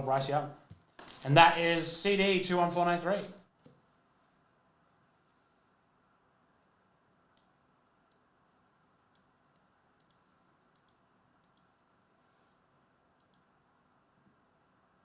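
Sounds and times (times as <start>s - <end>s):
soft sharp clicks: 9.1s - 11.7s, 13.2s - 13.5s.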